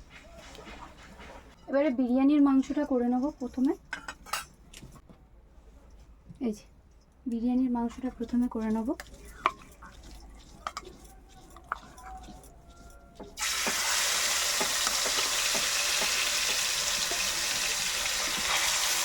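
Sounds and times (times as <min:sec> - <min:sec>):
meat sizzling in hot oil: 0:13.4 - 0:19.0.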